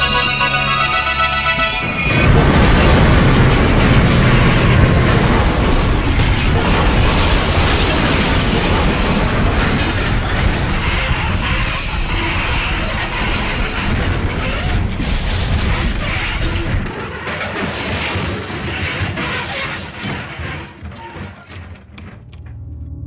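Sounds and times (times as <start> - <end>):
heavy rumble: 1.5 - 17.0
train wheels screeching: 5.9 - 16.9.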